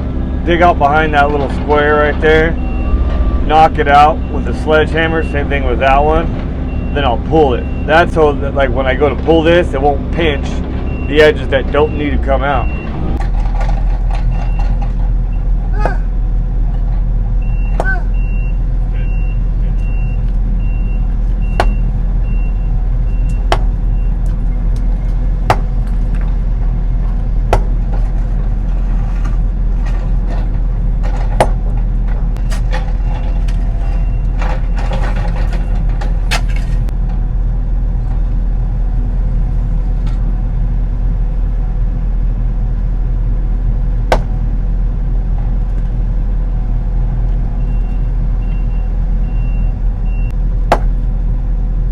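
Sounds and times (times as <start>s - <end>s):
excavator diesel engine running: 0.0s - 51.9s
excavator bucket scraping: 0.4s - 37.0s
machine warning beep: 2.4s - 5.6s, 6.7s - 8.0s, 10.3s - 13.2s, 17.4s - 24.2s, 32.4s - 35.8s
sharp knocks: 21.4s - 22.0s, 23.3s - 23.9s, 25.4s - 26.3s, 27.5s - 28.2s, 31.0s - 31.8s, 44.1s - 44.4s, 50.7s - 51.0s.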